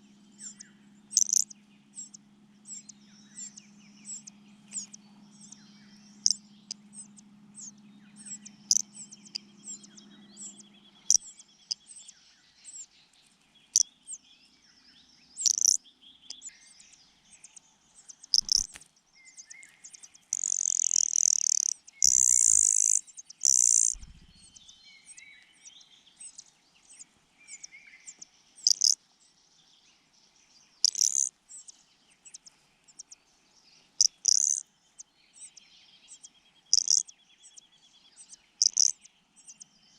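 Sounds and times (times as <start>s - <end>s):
nestlings begging chirps: 0.0s - 39.9s
shrill chick calls: 0.4s - 5.0s, 18.3s - 18.8s, 20.3s - 24.2s, 28.6s - 29.0s, 30.8s - 31.3s, 34.0s - 34.6s, 36.7s - 37.0s, 38.6s - 39.0s.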